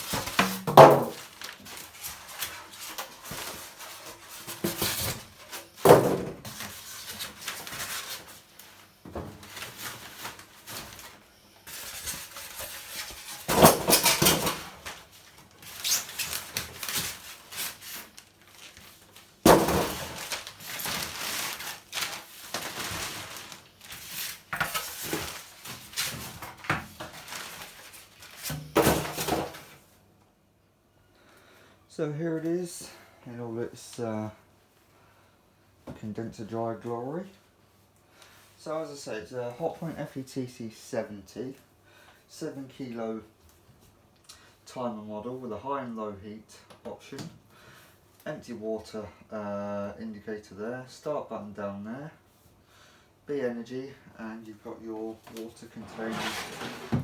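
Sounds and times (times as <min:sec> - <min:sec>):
cardboard and wrapping rustling: 0:00.0 - 0:29.8, 0:54.6 - 0:57.0
sharp knocks and thumps: 0:00.2 - 0:01.2.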